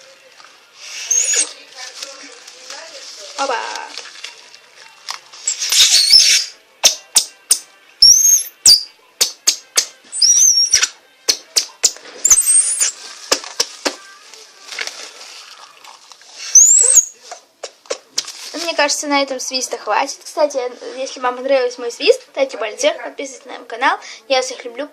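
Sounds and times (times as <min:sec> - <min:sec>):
plastic bag squeaky whistles: 0:00.8 - 0:01.6, 0:05.5 - 0:07.0, 0:08.0 - 0:08.9, 0:10.1 - 0:11.0, 0:12.2 - 0:13.0, 0:16.4 - 0:17.2.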